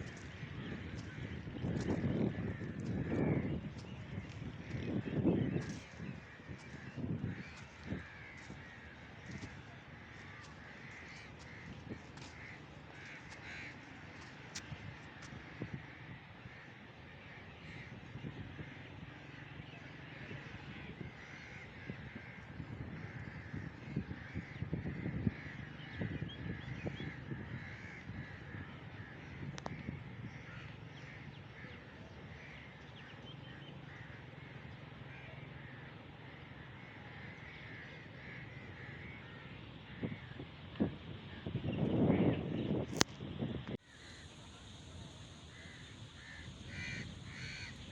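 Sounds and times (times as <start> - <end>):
crows cawing: 0.0 - 40.5, 43.8 - 47.9.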